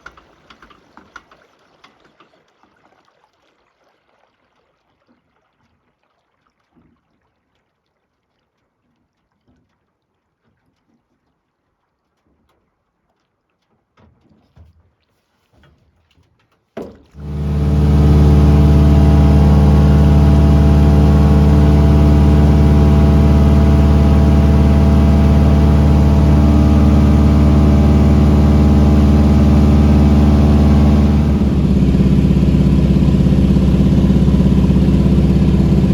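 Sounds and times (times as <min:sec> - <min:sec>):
light aircraft piston engine: 0:17.2 - 0:35.9.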